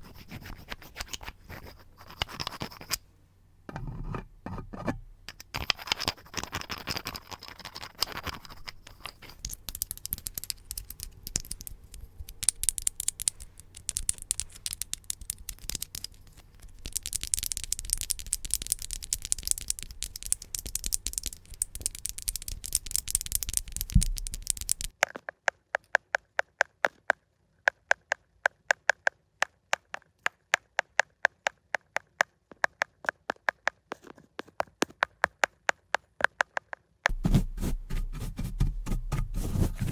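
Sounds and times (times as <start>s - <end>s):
scratching and scraping on surface: 0.0s - 3.0s, 3.7s - 24.9s, 37.1s - 39.9s.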